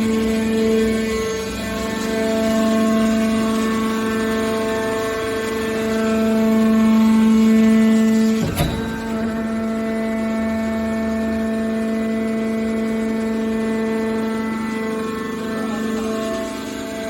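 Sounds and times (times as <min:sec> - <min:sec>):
hydraulic power unit whining: 0:08.3 - 0:10.5
sharp metal clunk: 0:08.4 - 0:10.2.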